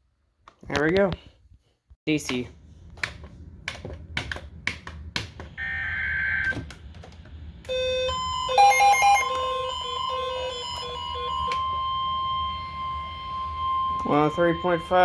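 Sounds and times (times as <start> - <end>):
steady beep tone: 7.7 - 15.0.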